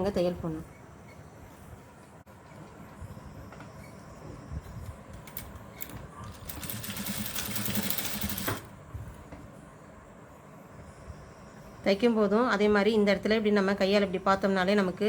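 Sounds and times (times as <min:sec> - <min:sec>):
sewing machine clicks: 0:05.2 - 0:08.7
sewing machine stitching: 0:06.2 - 0:08.7.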